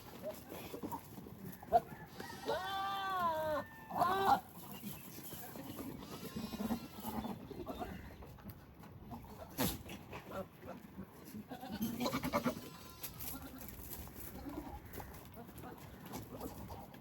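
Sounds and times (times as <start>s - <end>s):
goats bleating: 2.1s - 4.6s, 5.9s - 8.0s, 11.4s - 15.0s.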